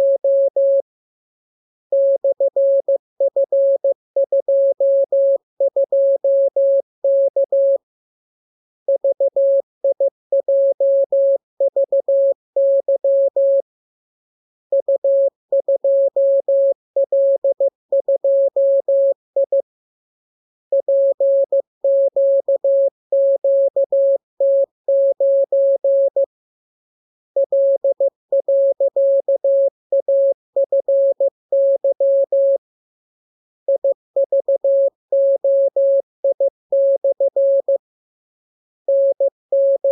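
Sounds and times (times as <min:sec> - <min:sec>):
morse code beeps: 0:38.9 - 0:39.9.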